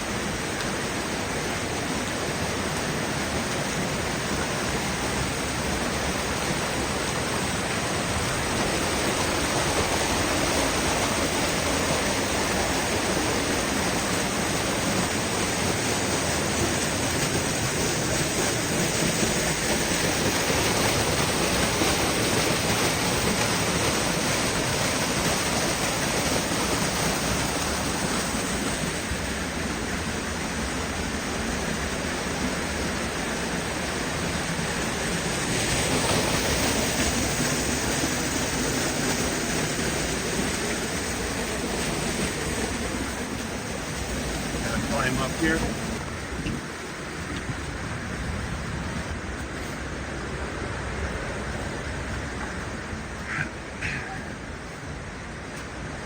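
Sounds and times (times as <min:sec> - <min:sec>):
waterfall and creek rushing: 0:00.0 - 0:56.0.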